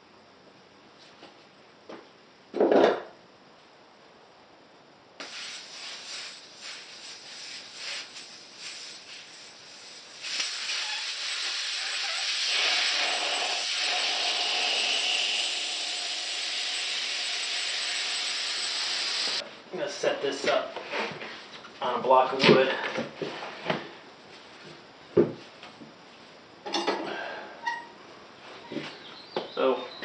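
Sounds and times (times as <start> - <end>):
air hissing out of tyre valve: 5.2 - 14.3.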